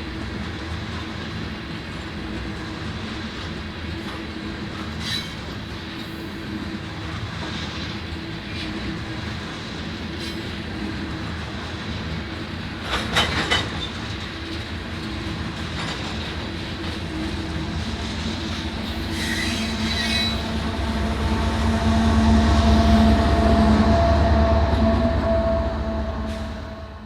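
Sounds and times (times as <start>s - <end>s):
freight train wheels rumbling: 0.0s - 27.0s
high wheel squeal: 5.0s - 5.5s, 18.3s - 27.0s
steady drone: 17.4s - 27.0s.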